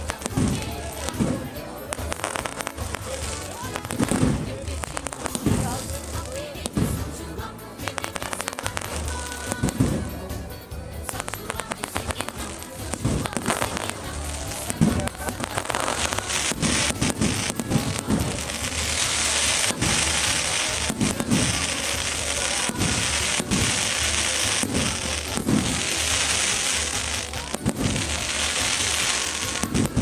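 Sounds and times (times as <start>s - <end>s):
bonfire crackling and popping: 0.0s - 30.0s.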